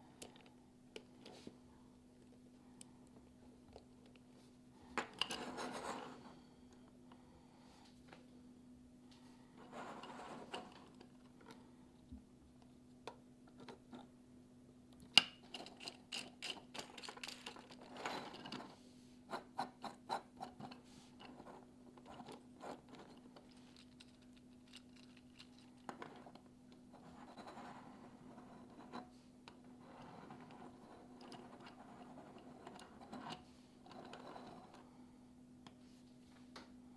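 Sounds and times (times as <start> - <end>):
faint steady hum: 0.0 - 36.9
plastic parts clicking and scraping: 15.1 - 18.8, 20.5 - 26.4.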